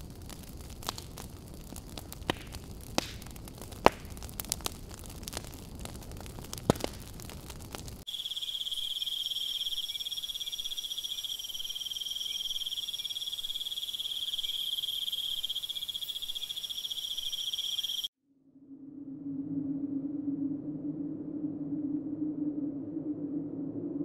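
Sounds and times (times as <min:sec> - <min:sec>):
fire crackling with pops: 0:00.0 - 0:18.0
crickets trilling: 0:08.0 - 0:18.1.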